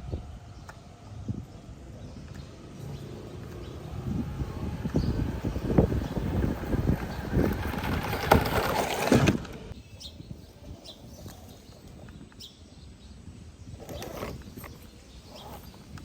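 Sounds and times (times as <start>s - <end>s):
toy car driving over rough ground: 2.7s - 9.8s, 13.7s - 16.0s.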